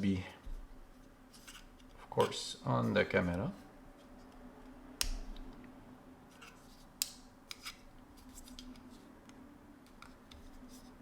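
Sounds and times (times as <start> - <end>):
faint steady hum: 0.0 - 11.0.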